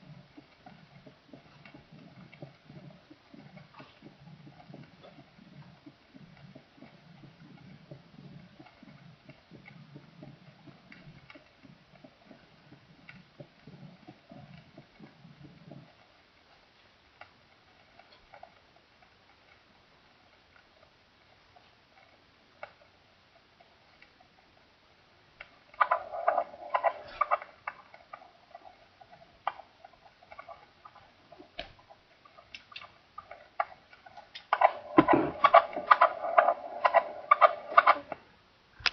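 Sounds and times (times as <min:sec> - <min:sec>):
heartbeat thumps through stethoscope: 0:00.0 - 0:16.0, 0:34.9 - 0:36.1
clicking and crackling: 0:00.0 - 0:38.9.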